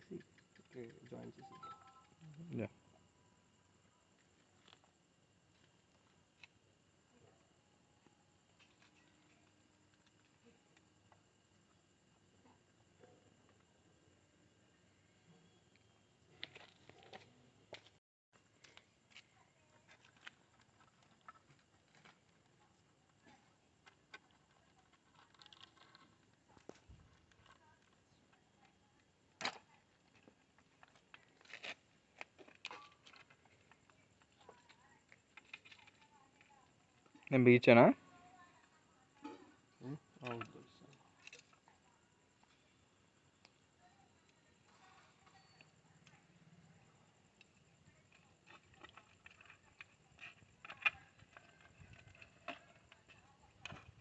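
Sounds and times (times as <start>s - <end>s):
small parts and tools clicking: 15.8s - 28.0s, 29.4s - 37.3s, 47.3s - 54.0s.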